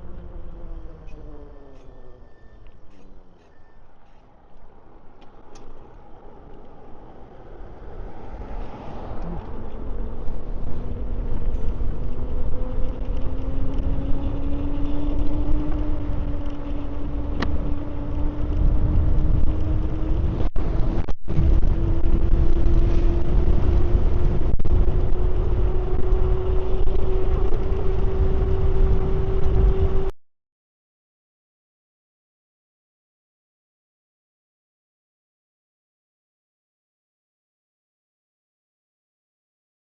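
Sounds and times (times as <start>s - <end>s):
electric motor whine: 0.0s - 4.2s, 9.1s - 30.1s
wind rumble on microphone: 4.6s - 30.1s.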